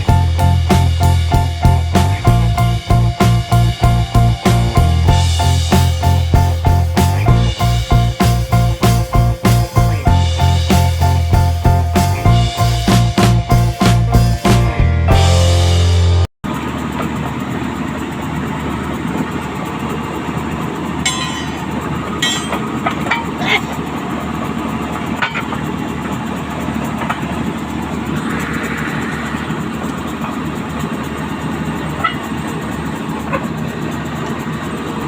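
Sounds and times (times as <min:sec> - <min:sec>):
excavator engine running: 0:00.0 - 0:16.3.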